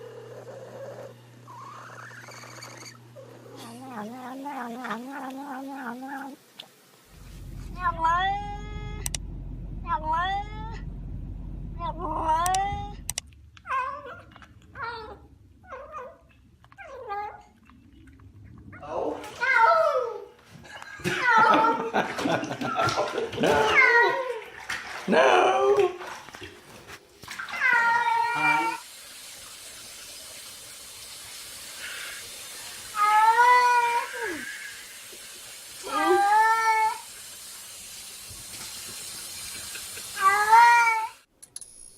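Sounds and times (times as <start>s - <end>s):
faint steady hiss: 2.4s - 7.9s
cat yowling and meowing: 7.8s - 9.1s, 13.6s - 16.2s, 23.5s - 24.4s, 27.5s - 28.8s, 32.9s - 34.5s, 35.9s - 37.0s, 40.2s - 41.2s.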